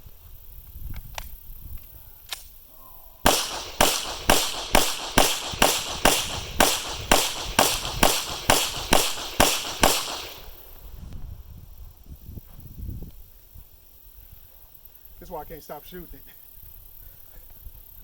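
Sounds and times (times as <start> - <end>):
pistol shots: 3.2 - 10.8.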